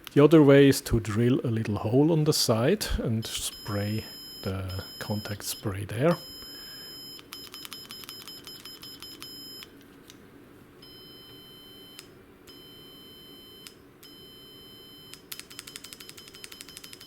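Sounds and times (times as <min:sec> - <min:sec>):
continuity tester beeping: 0:02.9 - 0:09.7, 0:10.8 - 0:17.0.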